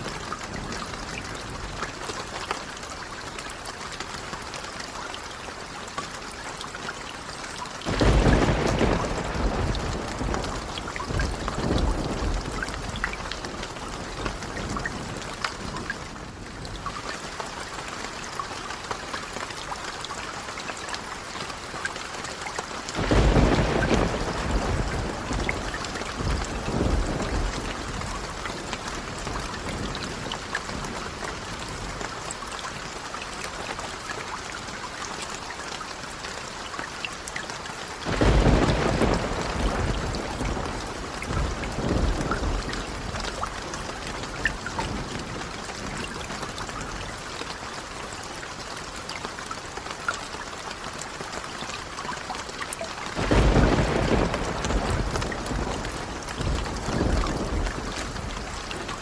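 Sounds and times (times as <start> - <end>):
steady rain: 0.0 - 59.0
rolling thunder: 7.9 - 16.7, 23.0 - 31.9, 38.1 - 46.1, 53.2 - 59.0.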